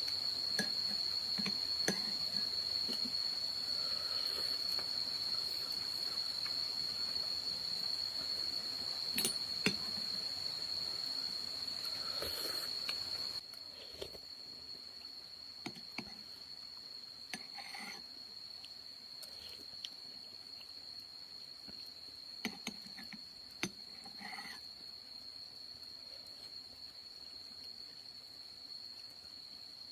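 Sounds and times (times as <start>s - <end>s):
cricket trilling: 0.0s - 29.9s
small clicks and knocks: 22.4s - 24.5s.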